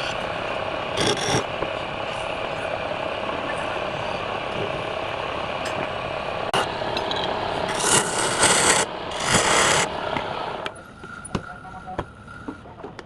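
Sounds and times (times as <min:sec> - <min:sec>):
wood lathe running: 0:00.9 - 0:01.4, 0:07.7 - 0:09.9
turning tool scraping wood: 0:01.0 - 0:01.4, 0:07.7 - 0:09.9.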